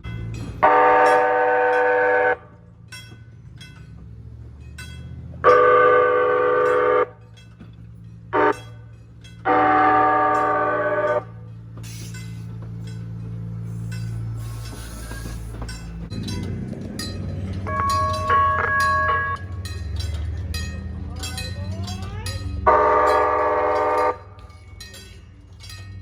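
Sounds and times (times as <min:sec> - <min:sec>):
light rail horn blasts: 0:00.6 - 0:02.7, 0:05.4 - 0:07.4, 0:08.3 - 0:12.3, 0:17.3 - 0:19.7, 0:22.4 - 0:24.5.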